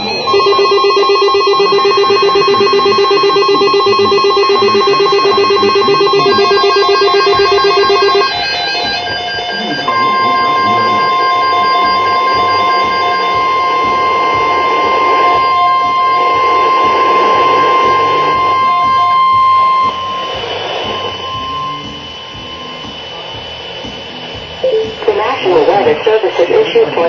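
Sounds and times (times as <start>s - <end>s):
steady single-pitch alert tone: 0.0s - 23.6s, 24.4s - 25.1s
pulsing two-pitch electronic alarm: 0.0s - 25.1s.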